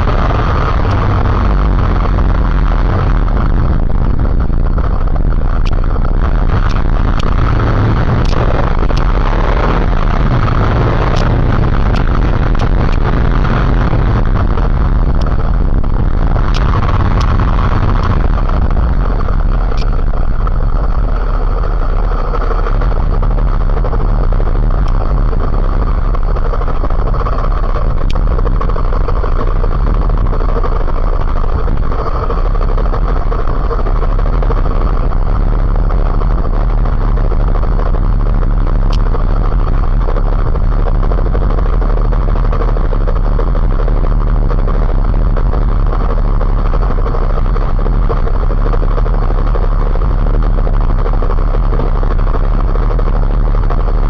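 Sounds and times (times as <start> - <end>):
motorcycle engine and road drone: 0.0 - 54.0
faint clicks: 19.7 - 20.1, 36.0 - 41.8.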